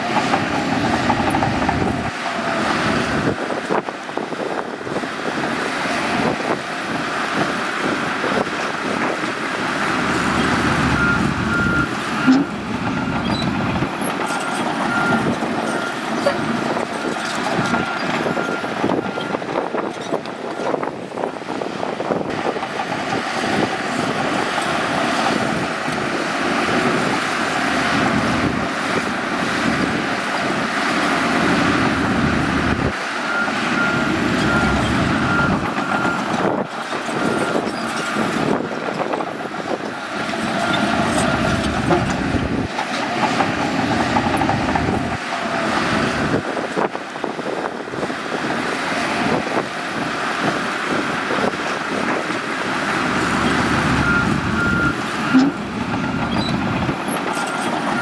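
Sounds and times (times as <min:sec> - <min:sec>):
bulldozer diesel engine working: 0:00.0 - 0:58.0
reversing alarm beeping: 0:10.7 - 0:13.5, 0:32.8 - 0:38.1, 0:53.2 - 0:56.7.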